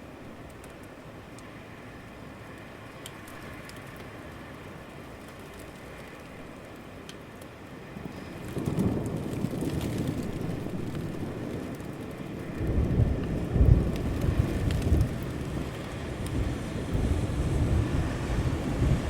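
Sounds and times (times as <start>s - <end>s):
steady rain: 0.0s - 19.0s
thunder rumbling: 8.0s - 19.0s.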